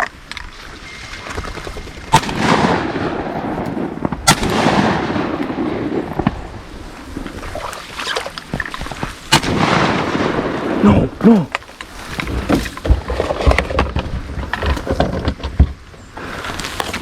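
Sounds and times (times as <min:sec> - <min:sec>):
shotgun shots: 0:02.1 - 0:06.6, 0:09.3 - 0:10.9.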